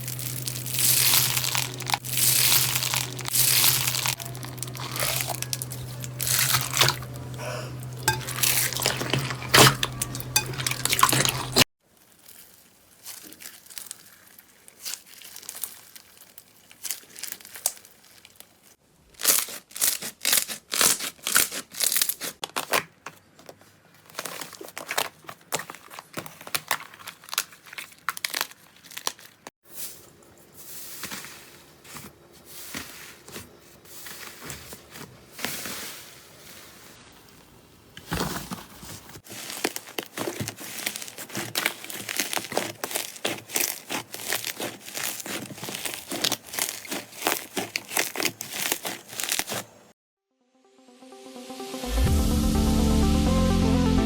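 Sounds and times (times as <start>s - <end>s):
slime crackling and popping: 0.0s - 18.5s, 39.3s - 49.7s.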